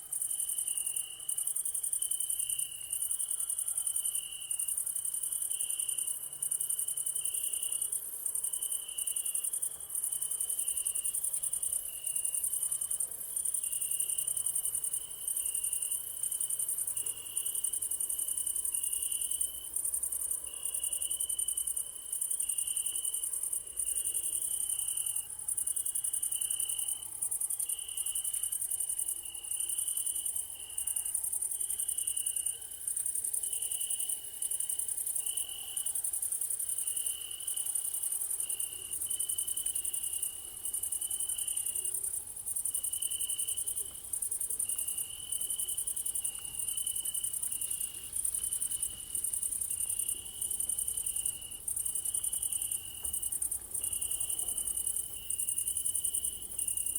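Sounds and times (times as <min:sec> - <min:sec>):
crickets chirping: 0:00.0 - 0:56.9
low-pitched insect chirping: 0:00.1 - 0:56.9.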